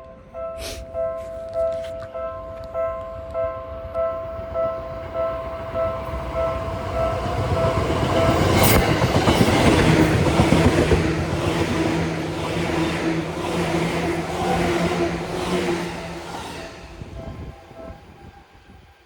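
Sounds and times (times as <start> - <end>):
low train hum: 0.0 - 19.0
railway crossing bell: 0.1 - 19.0
train rushing past: 4.3 - 19.0.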